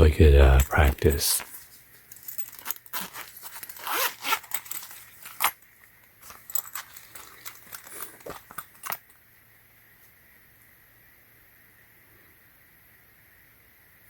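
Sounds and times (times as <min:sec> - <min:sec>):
packaging crinkling: 0:02.2 - 0:09.0.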